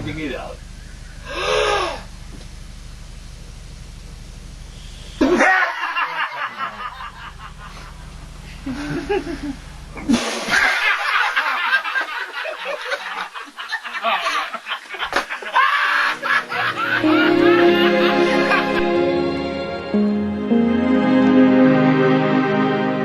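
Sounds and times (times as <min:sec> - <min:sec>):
steady low hum: 0:00.0 - 0:12.0, 0:16.0 - 0:23.0
people laughing: 0:05.2 - 0:19.4.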